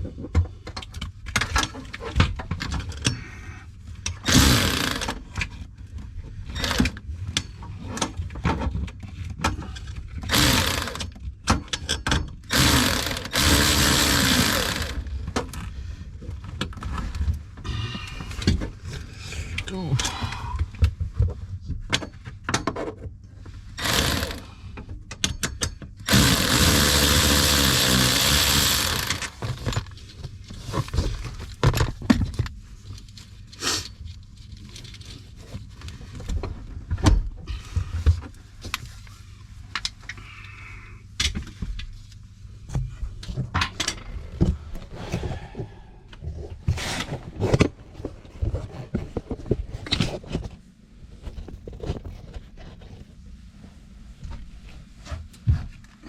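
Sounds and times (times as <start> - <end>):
handheld power tool running: 4.2 - 5.2, 10.3 - 11.1, 12.5 - 15.1, 23.8 - 24.5, 26.0 - 29.7
hand tools and bolts clanking: 23.8 - 24.4.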